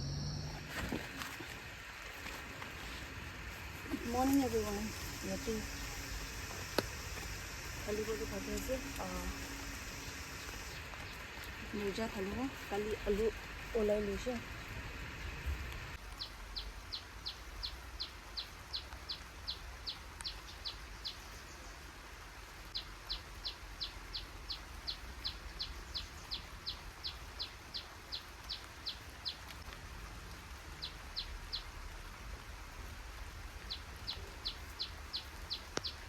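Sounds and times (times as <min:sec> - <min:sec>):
faint outdoor background noise: 0:00.0 - 0:36.0
small bird calling high notes: 0:03.9 - 0:10.8.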